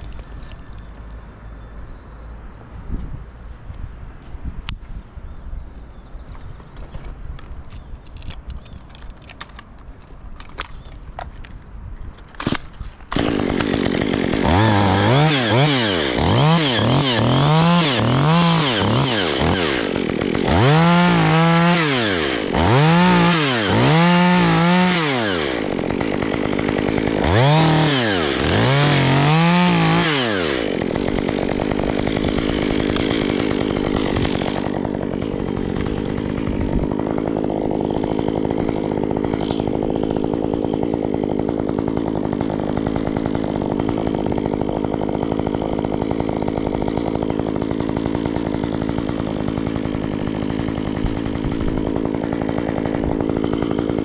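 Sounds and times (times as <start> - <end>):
chainsaw revving: 12.4 - 54.0.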